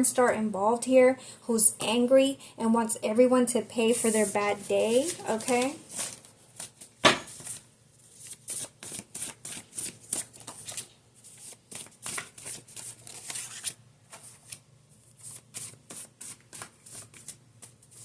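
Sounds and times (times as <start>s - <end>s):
cards being shuffled: 3.9s - 14.6s, 15.2s - 18.0s.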